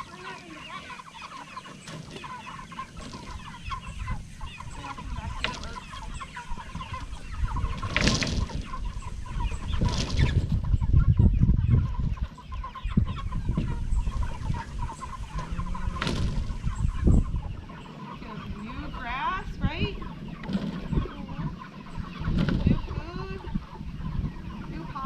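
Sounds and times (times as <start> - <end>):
chickens clucking: 0.0 - 25.0.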